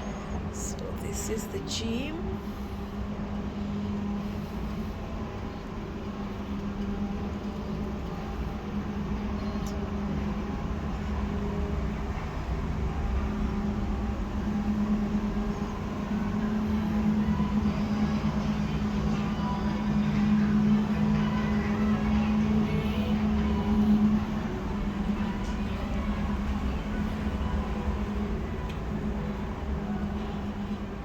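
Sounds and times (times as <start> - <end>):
mechanical hum: 0.0 - 31.0.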